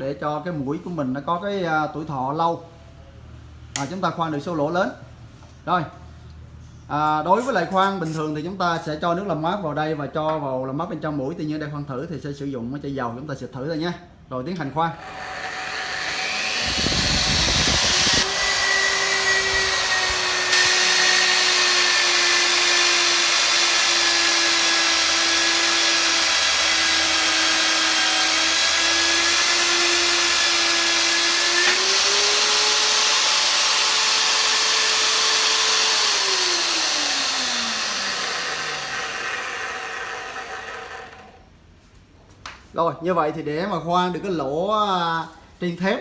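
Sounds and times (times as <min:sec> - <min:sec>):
drill cutting through steel: 0:15.0 - 0:41.4
drill motor whining: 0:15.0 - 0:41.4.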